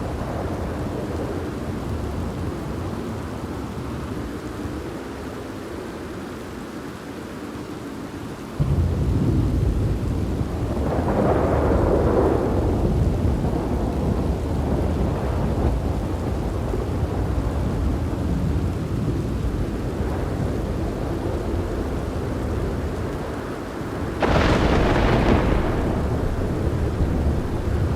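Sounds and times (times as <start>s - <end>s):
heavy rain: 0.0s - 27.9s
deep thunder rumble: 8.6s - 27.9s.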